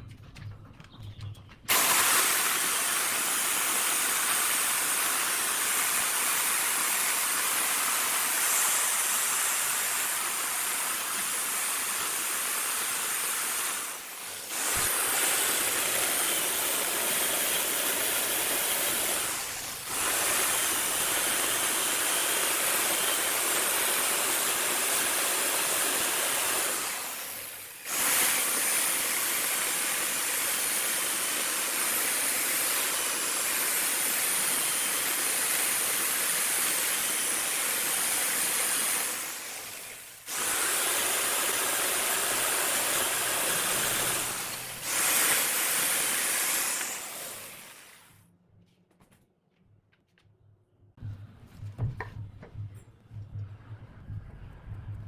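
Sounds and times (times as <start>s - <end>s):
wood lathe cutting wood: 1.7s - 48.1s.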